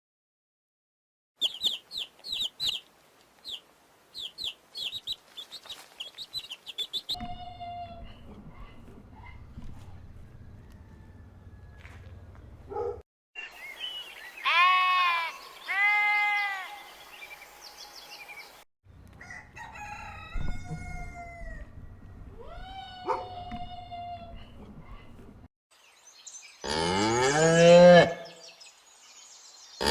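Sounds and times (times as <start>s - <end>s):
roosters crowing: 7.1s - 13.0s, 18.9s - 25.5s
goat bleating: 7.2s - 10.8s, 14.5s - 16.6s, 19.0s - 25.4s.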